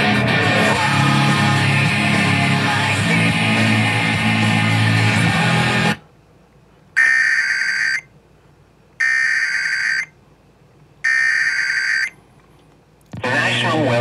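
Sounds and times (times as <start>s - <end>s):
music: 0.0s - 6.0s
harsh digital data tones: 9.0s - 10.1s, 11.1s - 12.1s.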